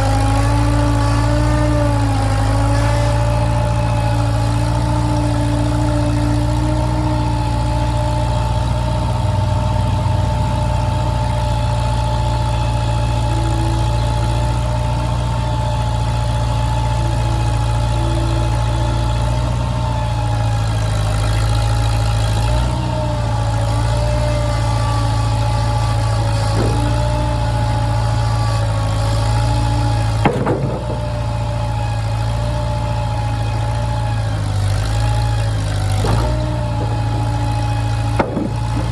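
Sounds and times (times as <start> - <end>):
engine running steadily: 0.0 - 38.9
steady whine: 0.0 - 38.9
sharp clank: 30.2 - 31.2.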